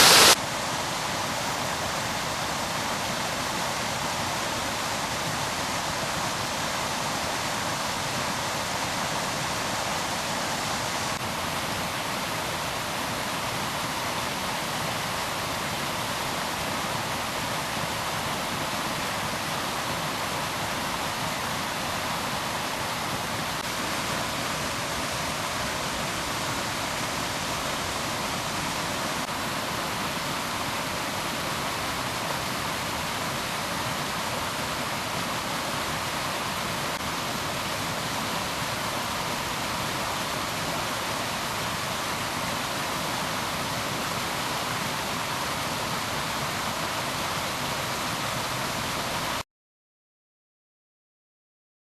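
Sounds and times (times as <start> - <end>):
water rushing: 0.0 - 49.4.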